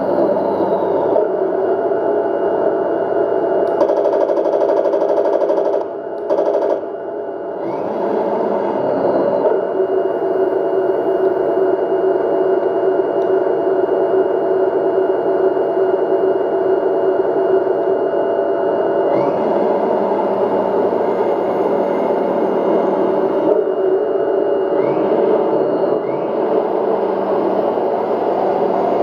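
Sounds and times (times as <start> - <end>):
simulated tank engine through speaker: 24.7 - 29.0.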